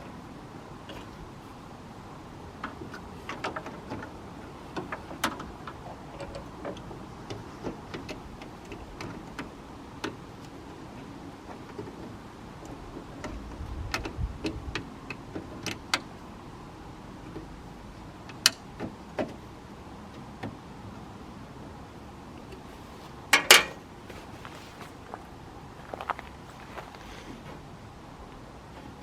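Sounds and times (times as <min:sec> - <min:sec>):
hand tools clicking and tapping: 0:22.6 - 0:25.2.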